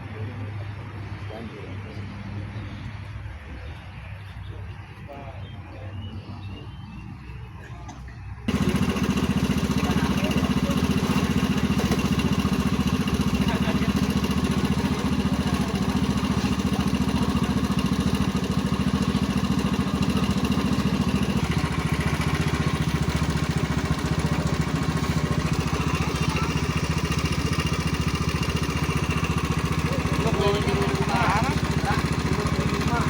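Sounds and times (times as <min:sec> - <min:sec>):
small engine running: 0:08.4 - 0:33.0.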